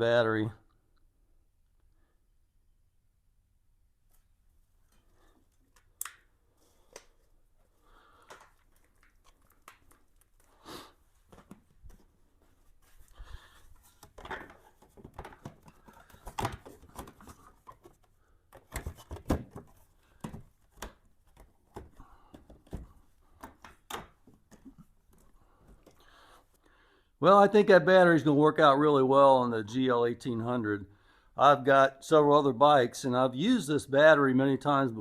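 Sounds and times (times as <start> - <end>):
handling clicks and knocks: 13.8 - 26.0.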